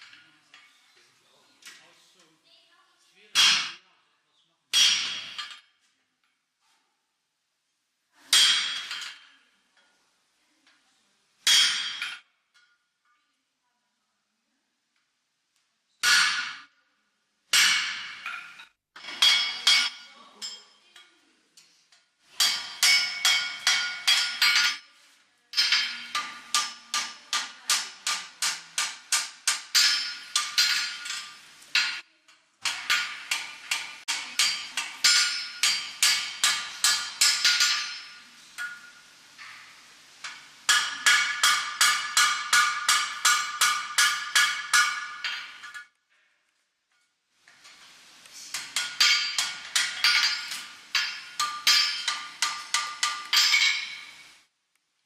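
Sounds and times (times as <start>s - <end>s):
hammer ringing on anvil: 32.7s - 39.0s.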